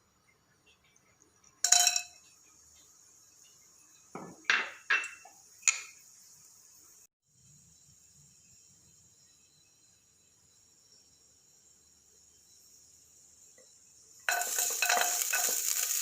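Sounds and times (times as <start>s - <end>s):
steady high-pitched hiss: 0.0s - 16.0s
utensils clattering against pots: 14.3s - 16.0s.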